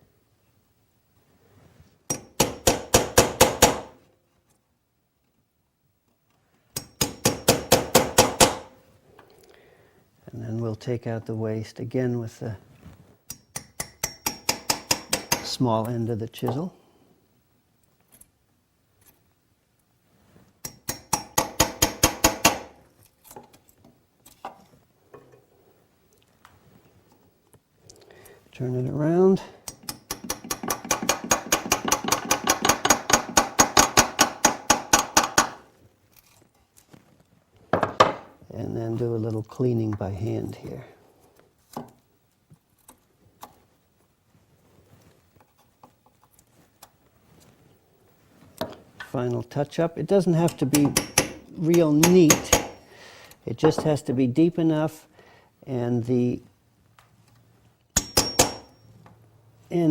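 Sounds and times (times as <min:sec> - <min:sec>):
hammer tapping chisel: 0:06.8 - 0:08.7, 0:13.3 - 0:15.6, 0:20.6 - 0:22.8, 0:29.7 - 0:35.6, 0:50.5 - 0:52.8, 0:58.0 - 0:58.8.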